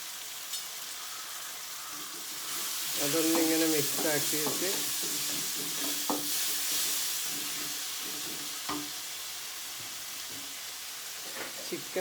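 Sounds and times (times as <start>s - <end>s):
food sizzling in oil: 0.0s - 12.0s
spoon scraping a pan: 1.8s - 9.0s.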